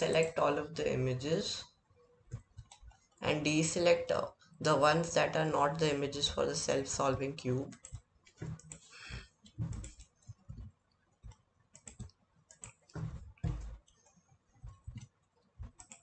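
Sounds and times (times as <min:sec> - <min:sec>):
computer mouse clicking: 0:02.3 - 0:03.1, 0:07.6 - 0:16.0.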